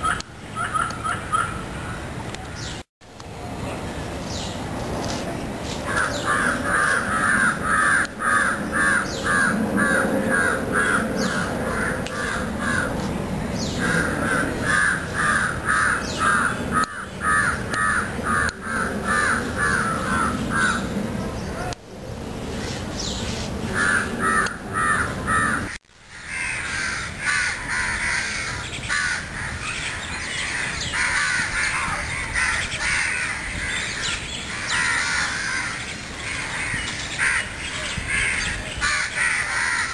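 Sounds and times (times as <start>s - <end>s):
crows cawing: 5.9s - 13.0s, 13.8s - 20.9s, 23.8s - 39.9s.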